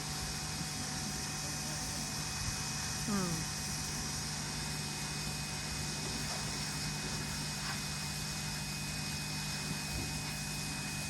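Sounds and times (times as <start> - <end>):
pressure washer motor running: 0.0 - 11.0.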